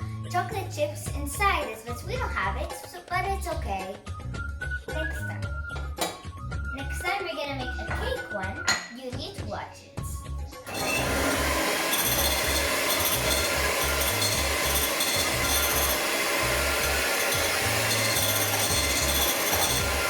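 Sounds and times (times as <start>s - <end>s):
electric hand mixer whirring: 10.6s - 20.0s.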